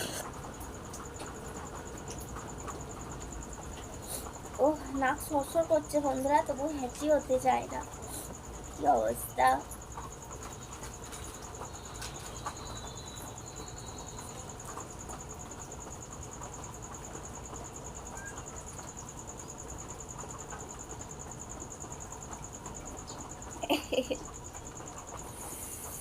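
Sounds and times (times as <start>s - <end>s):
insect trilling: 0.0s - 26.0s.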